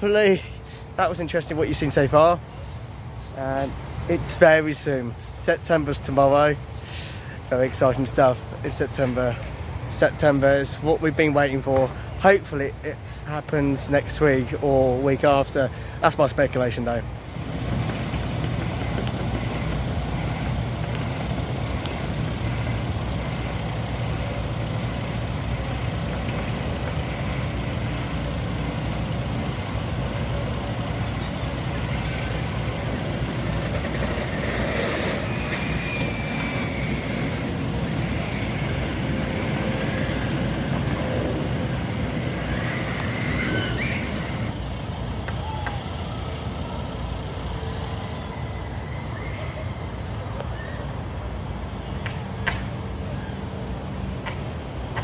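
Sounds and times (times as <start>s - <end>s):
heavy engine running: 17.0s - 48.4s
brief high squeals: 35.0s - 37.5s, 42.4s - 44.5s, 48.0s - 50.9s.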